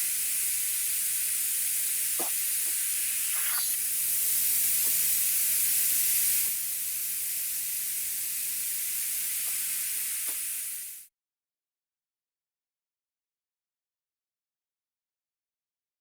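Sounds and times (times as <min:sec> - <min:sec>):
iguana hissing: 0:00.2 - 0:06.5.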